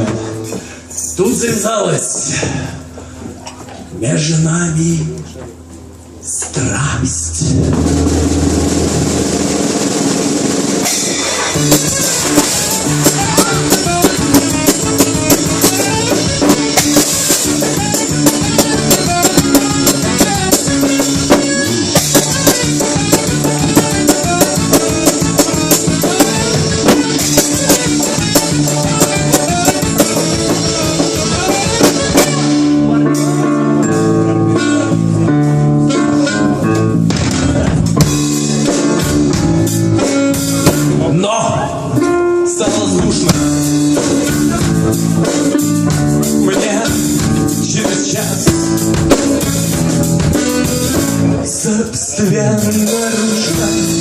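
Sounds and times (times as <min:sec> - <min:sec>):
live band playing: 0:00.0 - 0:54.0
drum hits: 0:07.4 - 0:33.3, 0:37.0 - 0:41.1, 0:42.7 - 0:51.2.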